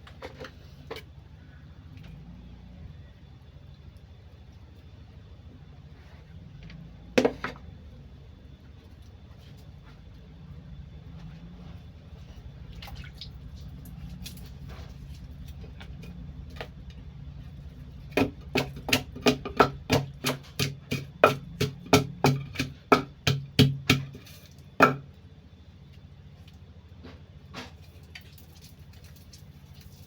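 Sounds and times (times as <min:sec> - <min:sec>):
steady low hum: 0:00.0 - 0:30.0
pestle pounding in mortar: 0:18.1 - 0:24.2.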